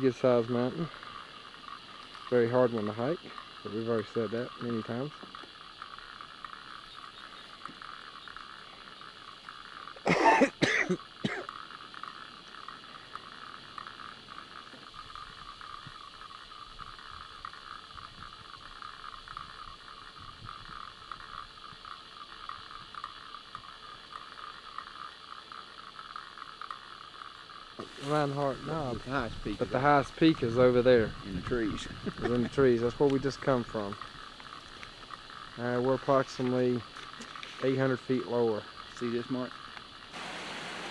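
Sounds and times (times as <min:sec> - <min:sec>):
steady background hiss: 0:00.0 - 0:40.9
person coughing: 0:10.1 - 0:11.5.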